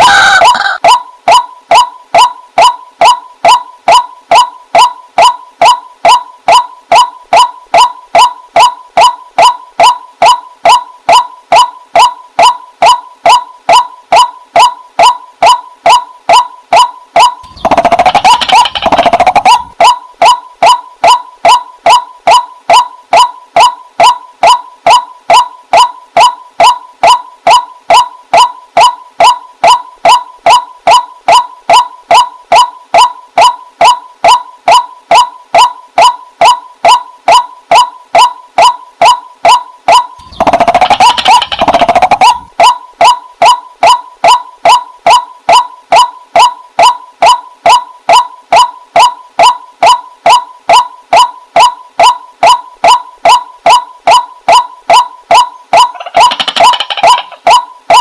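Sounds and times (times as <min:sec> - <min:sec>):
waterhen calling: 0:00.0 - 0:00.8.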